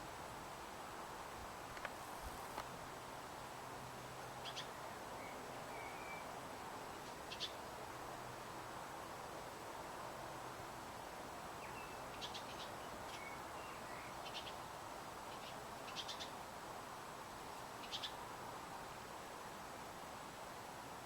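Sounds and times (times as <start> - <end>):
steady background hiss: 0.0 - 21.0.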